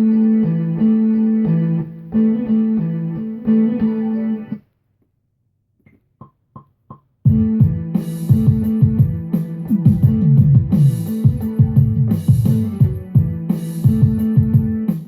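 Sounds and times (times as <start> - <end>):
looped guitar phrase: 0.0 - 4.6.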